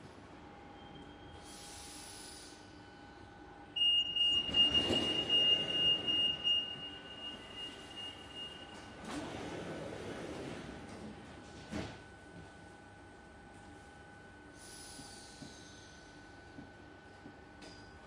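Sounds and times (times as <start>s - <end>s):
train wheels squealing on rails: 4.2s - 9.0s, 14.6s - 16.4s.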